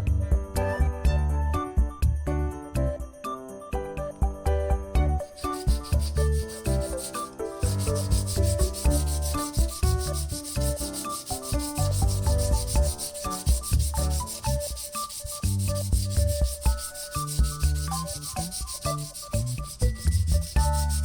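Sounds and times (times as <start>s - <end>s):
fast rubbing strokes: 5.2s - 21.0s.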